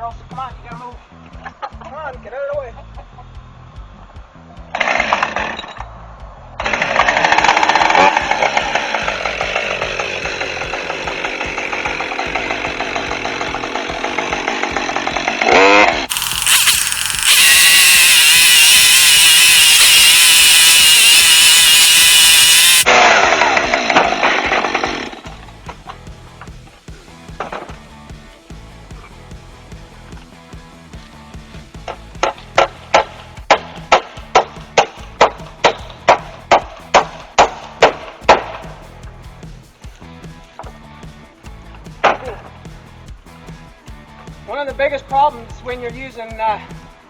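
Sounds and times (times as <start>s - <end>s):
chainsaw cutting wood: 4.8s - 5.7s, 6.6s - 25.4s.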